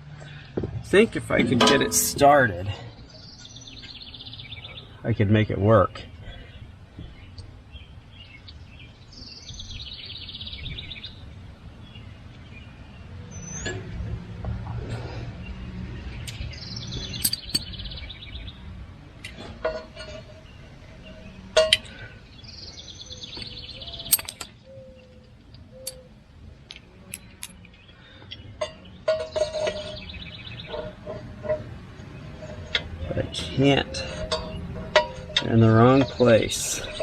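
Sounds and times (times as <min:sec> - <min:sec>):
metal parts clinking: 0:01.4 - 0:02.4, 0:17.2 - 0:17.7, 0:23.4 - 0:24.6, 0:27.1 - 0:27.6
songbird singing a trill: 0:01.6 - 0:13.8, 0:16.0 - 0:18.7, 0:20.0 - 0:26.2, 0:26.8 - 0:30.9, 0:33.1 - 0:37.0.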